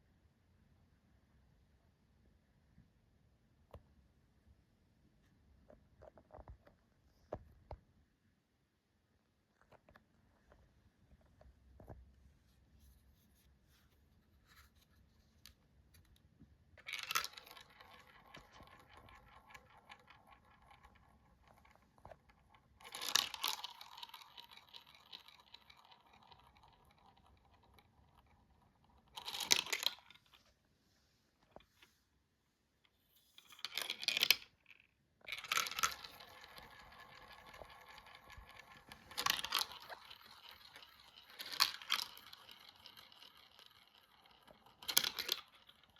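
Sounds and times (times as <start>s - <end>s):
marbles clattering on a track: 16.8s - 30.4s, 33.4s - 34.7s, 35.3s - 45.9s.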